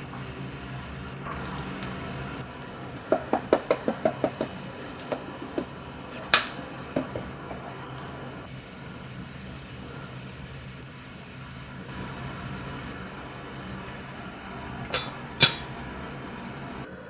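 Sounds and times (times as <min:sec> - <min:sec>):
sharp knocks: 0:03.1 - 0:07.3
bright clatter: 0:03.1 - 0:08.1, 0:14.9 - 0:15.7.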